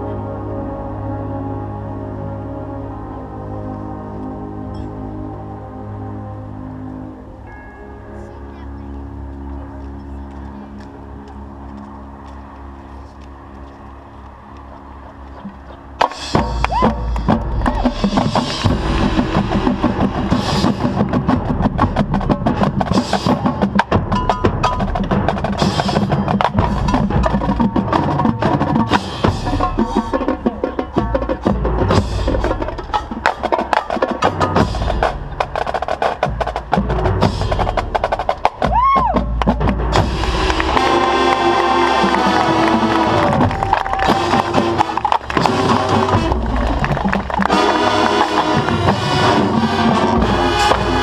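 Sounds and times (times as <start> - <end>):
band sustained chords: 0.0 - 38.6, 39.6 - 51.0
marching band drums: 15.4 - 51.0.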